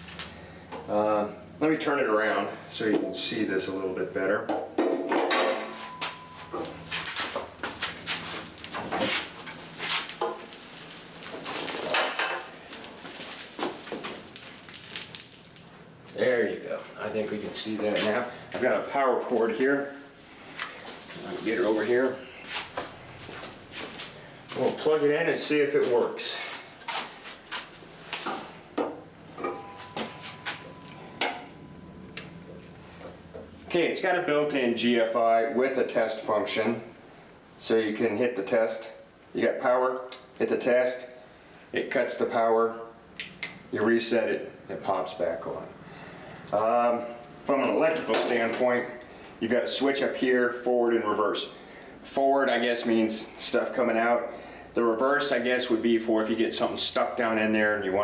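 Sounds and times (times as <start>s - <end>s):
faint steady tone: 5.6s - 6.9s, 29.4s - 33.4s
concrete mixer clanking and rattling: 8.7s - 12.6s.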